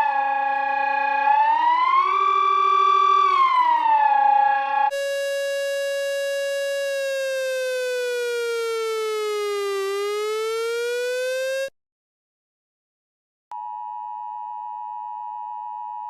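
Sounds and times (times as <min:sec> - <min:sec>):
buzzy emergency siren tone: 0:00.0 - 0:11.7.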